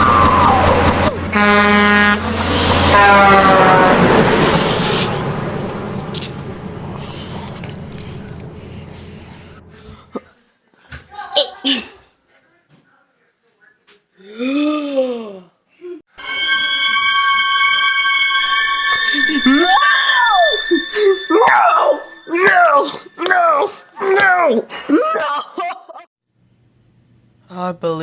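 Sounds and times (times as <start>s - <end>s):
low rumbling noise: 0.0s - 10.1s
steady high tone: 16.1s - 24.3s
high-pitched voice wailing: 19.0s - 24.7s.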